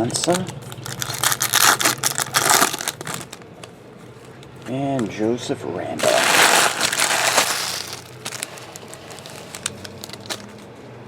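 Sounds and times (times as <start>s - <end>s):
card wrapper crinkling: 0.2s - 3.5s, 6.0s - 10.7s
cards being handled: 6.0s - 10.7s.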